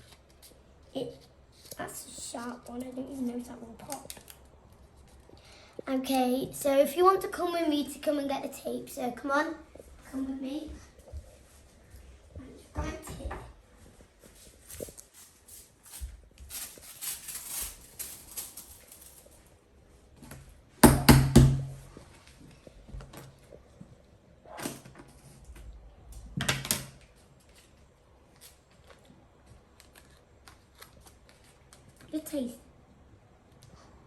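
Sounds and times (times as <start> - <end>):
rustling: 9.8 - 20.5.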